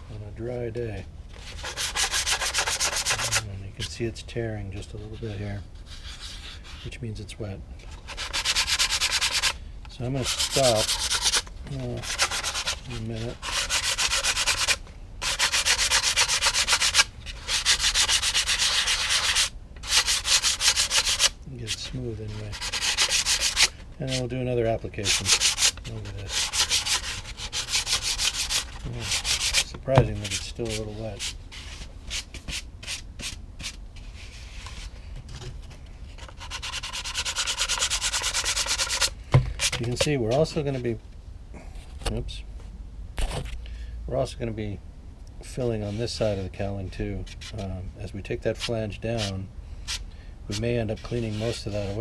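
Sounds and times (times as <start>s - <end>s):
hand sanding back and forth: 1.4s - 3.5s, 4.8s - 7.0s, 8.0s - 34.9s, 36.2s - 40.9s, 48.4s - 52.0s.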